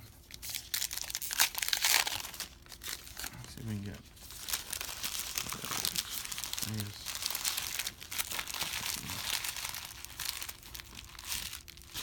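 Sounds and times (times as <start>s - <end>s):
wrapper crinkling and tearing: 0.3s - 12.0s.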